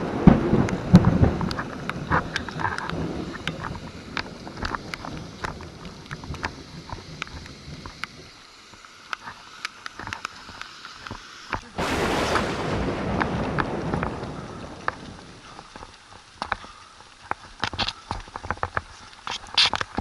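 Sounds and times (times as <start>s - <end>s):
low rumble of thunder: 0.0s - 6.4s, 11.8s - 15.9s
rain falling: 0.0s - 20.0s
loud steady rushing noise: 11.8s - 15.5s.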